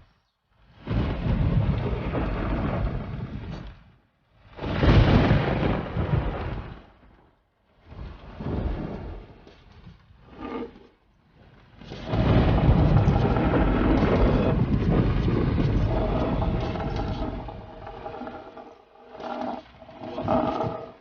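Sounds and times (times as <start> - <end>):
loud rumbling: 12.0 - 19.2.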